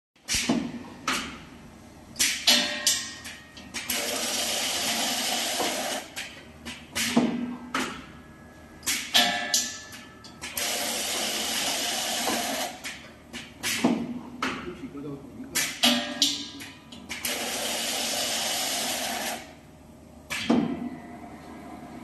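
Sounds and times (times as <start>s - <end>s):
machine clicks and clunks: 11.7s - 14.7s.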